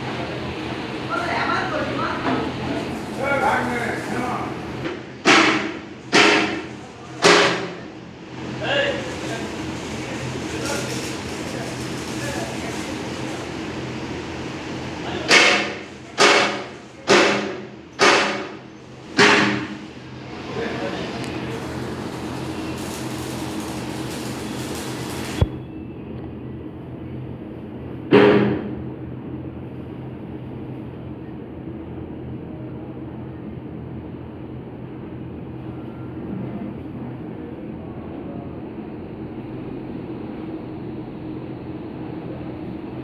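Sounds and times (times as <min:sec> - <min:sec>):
machinery rumble and hum: 0:00.0 - 0:43.0
hammer striking steel: 0:05.2 - 0:07.8, 0:15.3 - 0:18.6, 0:19.2 - 0:19.8.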